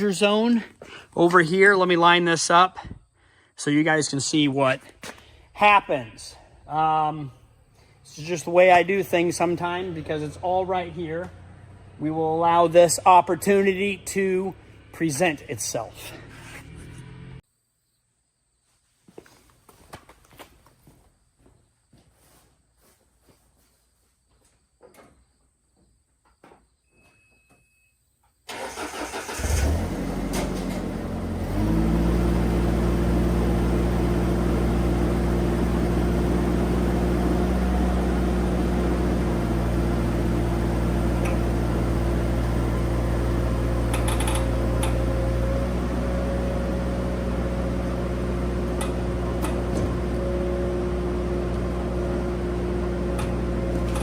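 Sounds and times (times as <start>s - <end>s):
engine cranking and starting: 28.5s - 32.4s, 43.6s - 45.5s, 53.0s - 54.0s
engine running steadily: 29.3s - 54.0s.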